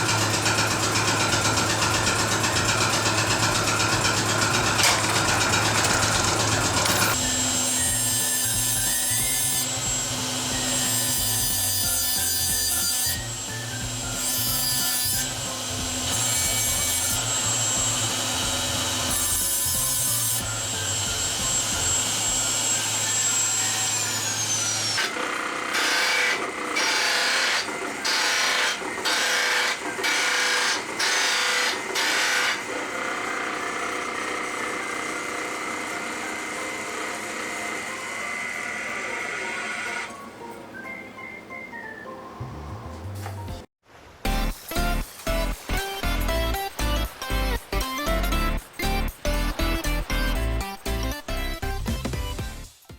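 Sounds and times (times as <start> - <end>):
power tool whining: 0.0 - 40.2.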